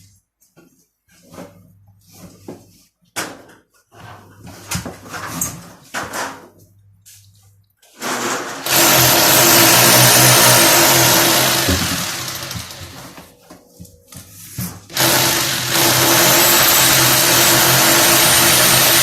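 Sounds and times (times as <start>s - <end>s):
power tool running: 8.0s - 13.2s, 14.9s - 19.0s.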